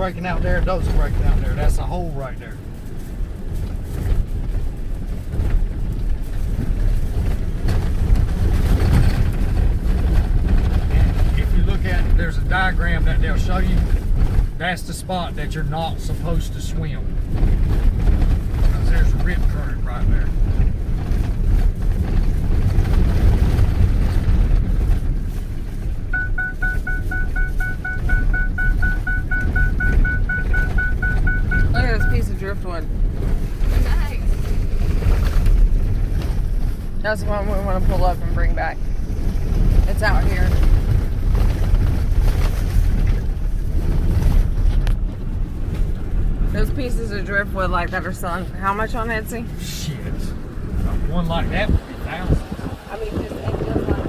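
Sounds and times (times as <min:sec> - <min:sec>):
truck rumbling: 0:00.0 - 0:54.0
rapid electronic warning chime: 0:26.2 - 0:32.4.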